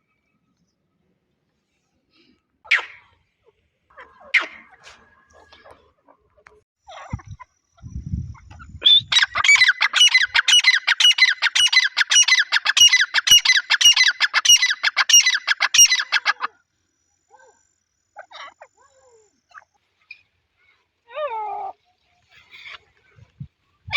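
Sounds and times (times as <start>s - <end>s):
bird calling harsh notes: 8.8s - 16.4s.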